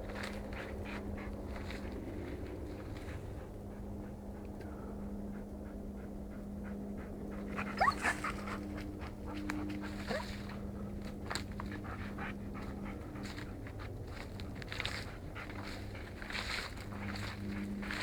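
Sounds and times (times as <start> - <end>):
dog panting: 3.2 - 10.6, 11.5 - 18.0
dog whining: 7.6 - 8.4, 10.0 - 10.4.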